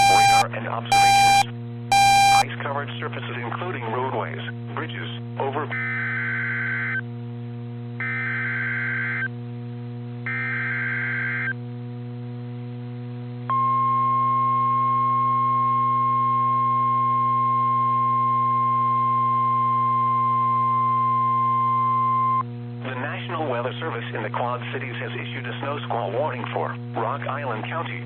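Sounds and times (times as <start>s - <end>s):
steady alarm tone: 0.0s - 2.4s
warbling data bursts: 0.0s - 2.4s
low hum: 0.0s - 3.6s, 4.4s - 27.0s.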